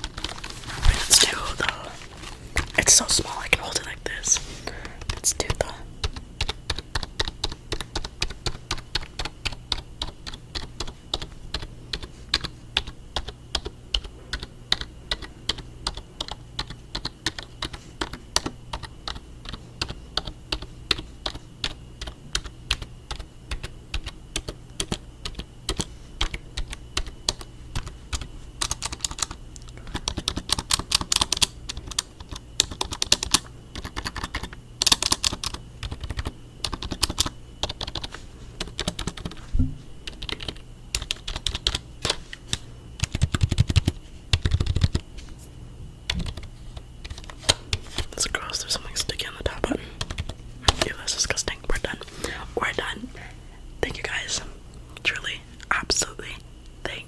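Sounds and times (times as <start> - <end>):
fast keyboard typing: 0.0 - 1.9, 4.9 - 39.4, 40.0 - 42.2, 43.0 - 45.0, 46.1 - 48.1, 50.0 - 50.9.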